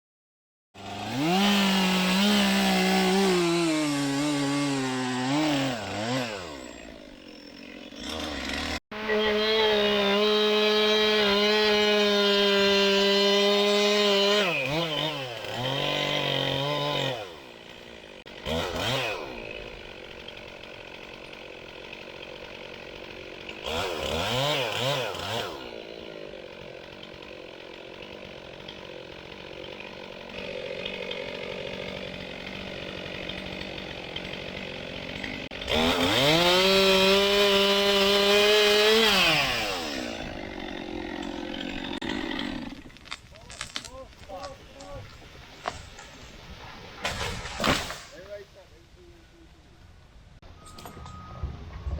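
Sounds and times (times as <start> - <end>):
chainsaw revving and idling: 0.8 - 43.8.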